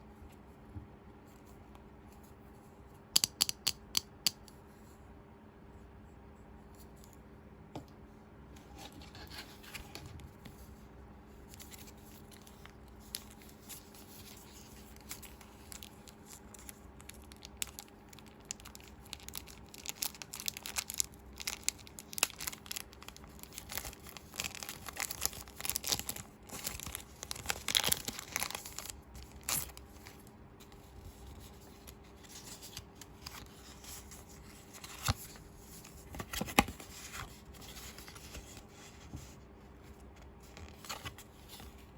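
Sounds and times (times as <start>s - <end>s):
packaging crinkling and tearing: 11.5s - 38.5s.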